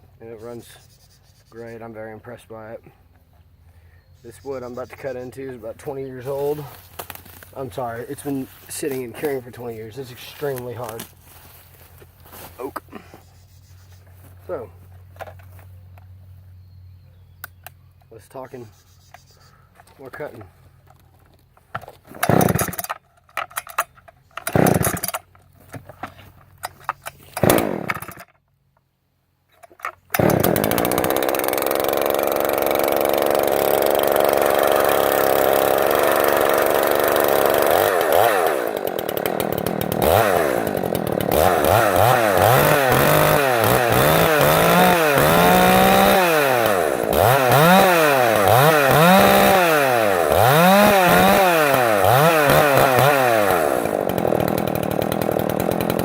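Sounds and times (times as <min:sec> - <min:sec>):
chainsaw pull-starting: 0:05.9 - 0:11.4, 0:21.7 - 0:28.4, 0:29.6 - 0:56.0
chainsaw cutting wood: 0:22.1 - 0:23.0, 0:24.4 - 0:25.3, 0:27.2 - 0:28.4, 0:30.0 - 0:56.0.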